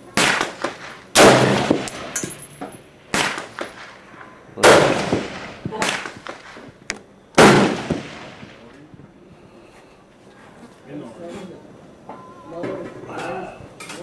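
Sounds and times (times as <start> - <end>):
rifle shots echoing: 0.2 - 6.6, 7.4 - 8.7.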